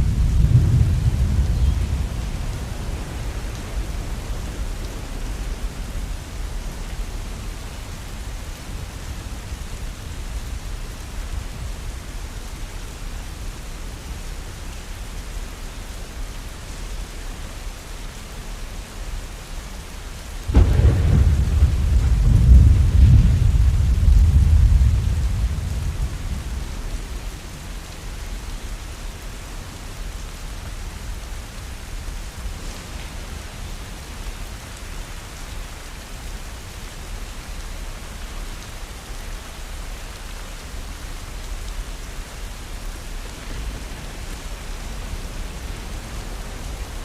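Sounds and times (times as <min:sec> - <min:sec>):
thunderclap: 0:00.0 - 0:04.0, 0:20.5 - 0:27.2
low thunder rumbling: 0:00.0 - 0:06.6, 0:20.5 - 0:28.2
steady rain: 0:00.0 - 0:47.0.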